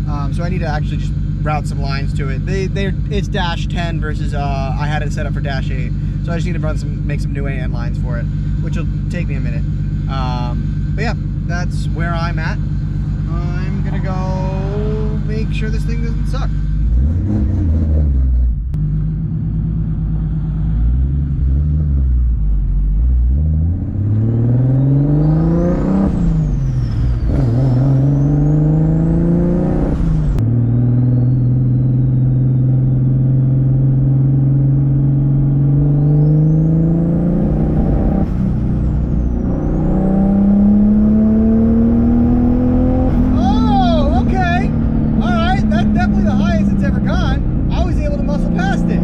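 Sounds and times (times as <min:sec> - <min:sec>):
car engine revving through gears: 0:05.8 - 0:49.0
turbo whine: 0:24.6 - 0:49.0.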